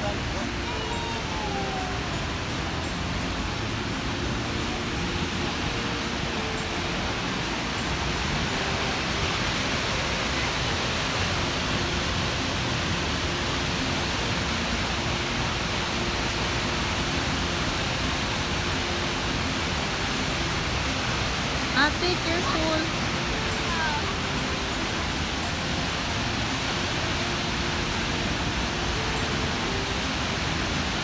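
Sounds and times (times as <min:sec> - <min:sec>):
waterfall rushing: 0:00.0 - 0:31.0.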